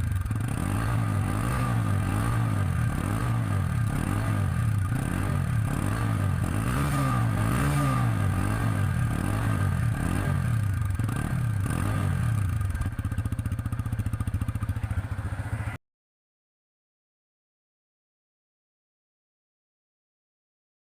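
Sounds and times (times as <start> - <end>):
motorcycle engine revving and idling: 0.0 - 15.8.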